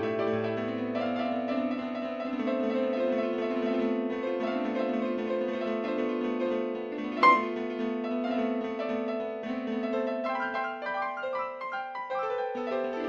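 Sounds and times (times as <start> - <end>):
slow piano chords: 7.2 - 7.9.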